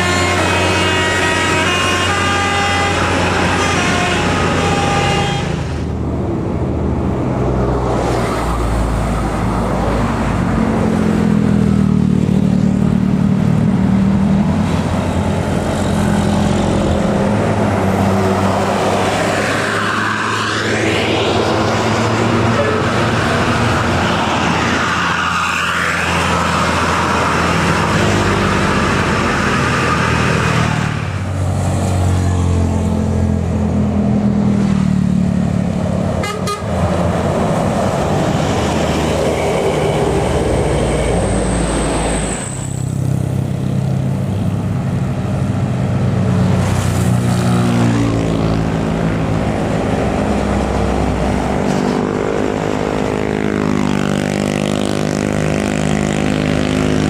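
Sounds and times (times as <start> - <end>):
multi-tone musical bus horn: 0.0 - 5.8, 22.2 - 23.5, 36.2 - 36.8
buses labouring uphill: 0.0 - 57.0.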